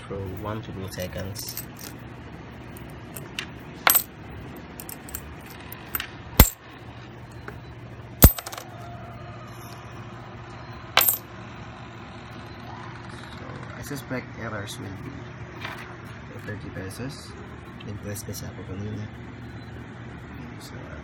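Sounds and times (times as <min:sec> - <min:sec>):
coins clinking into coin acceptor: 0:01.1 - 0:02.0, 0:02.8 - 0:06.6, 0:08.2 - 0:08.6, 0:11.0 - 0:11.2.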